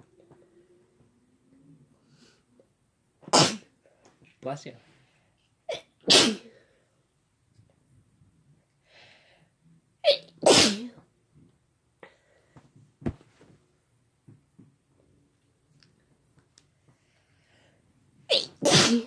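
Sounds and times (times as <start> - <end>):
person sneezing: 3.3 - 3.7, 5.7 - 6.6, 10.1 - 11.0, 18.3 - 19.0.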